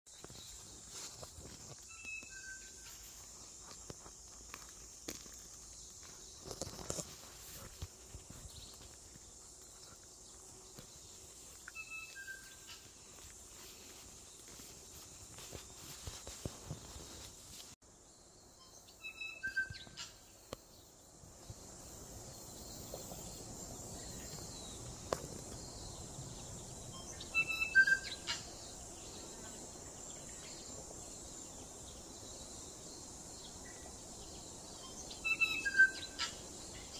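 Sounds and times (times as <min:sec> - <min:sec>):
tui singing with clicks: 0:01.8 - 0:02.8, 0:11.5 - 0:12.9.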